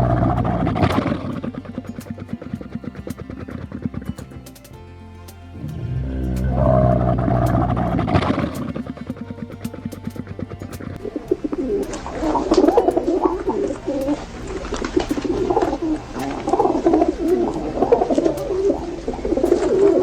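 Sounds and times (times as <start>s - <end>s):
pigeons cooing: 11.0s - 20.0s.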